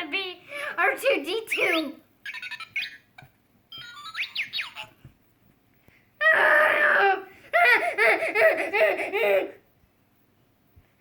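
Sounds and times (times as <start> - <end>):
child imitating robot beeps: 1.5 - 3.0.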